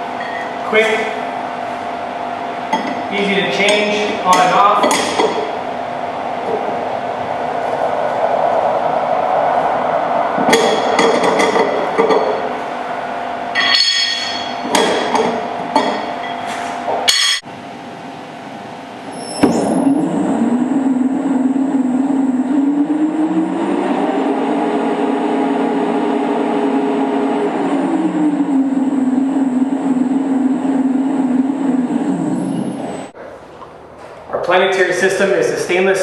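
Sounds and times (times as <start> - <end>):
floor grinder humming and whining: 19.1 - 33.2.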